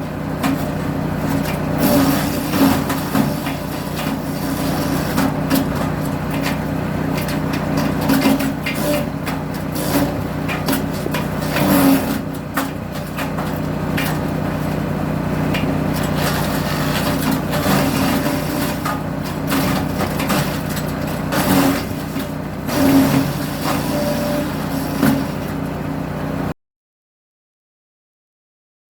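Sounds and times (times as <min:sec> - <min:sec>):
wood chipper engine running: 0:00.0 - 0:26.5
wood cracking being chipped: 0:01.3 - 0:14.9, 0:15.6 - 0:22.9.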